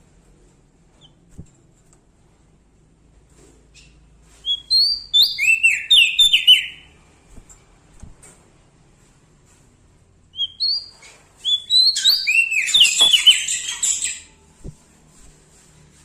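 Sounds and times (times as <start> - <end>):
songbird chirping and twittering: 3.8 - 7.0, 10.3 - 14.8.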